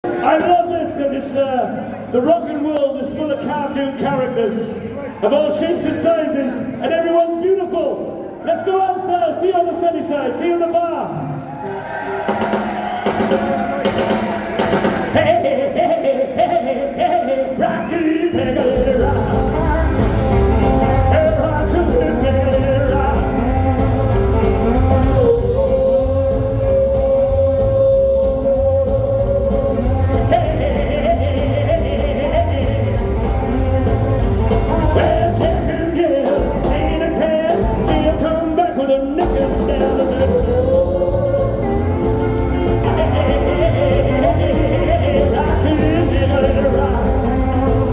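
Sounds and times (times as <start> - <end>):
rock and roll band playing: 11.6 - 47.9
lead singer singing: 15.0 - 47.9.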